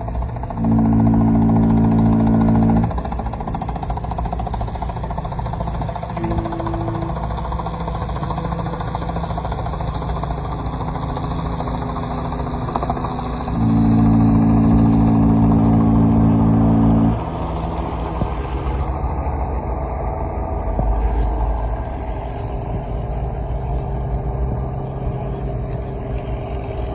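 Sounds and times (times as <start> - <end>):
steady low drone: 0.0 - 26.9
ship's horn blast: 0.5 - 3.2, 6.0 - 7.8, 13.5 - 17.9.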